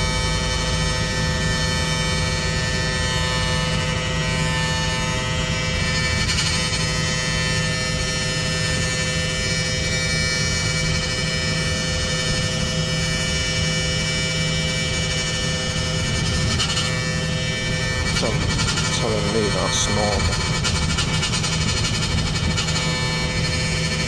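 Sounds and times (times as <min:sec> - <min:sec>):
electrical buzzing drone: 0:00.0 - 0:24.0
low hum: 0:14.9 - 0:24.0.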